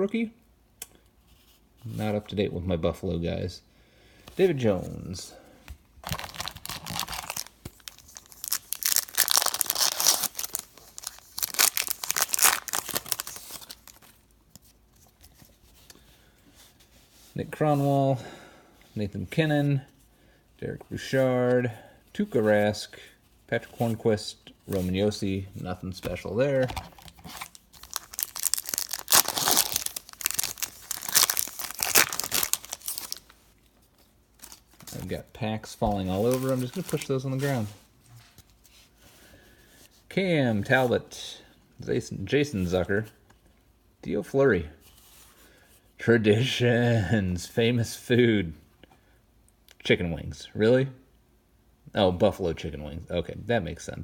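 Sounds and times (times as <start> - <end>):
wrapper ripping and crinkling: 6.0 - 14.3, 26.0 - 33.4, 36.0 - 37.7.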